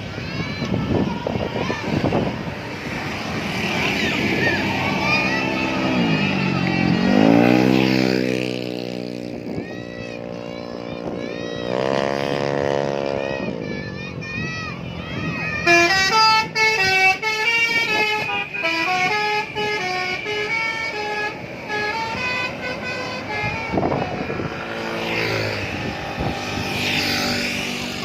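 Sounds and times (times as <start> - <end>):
rough noisy horn: 0.9 - 13.9, 15.2 - 28.0
bus musical horn tune: 15.6 - 24.2.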